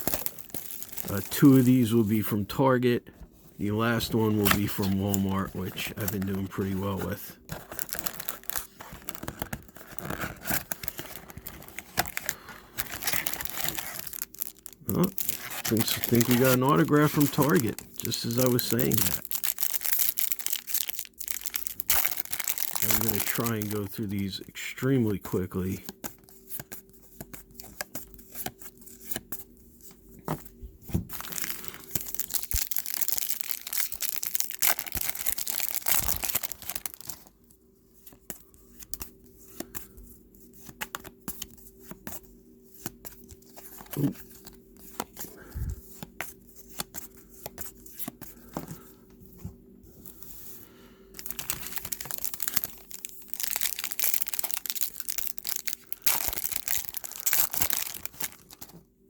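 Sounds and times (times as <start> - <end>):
wrappers tearing and crinkling: 0.0 - 2.3, 3.9 - 24.5, 31.1 - 37.3, 51.2 - 58.7.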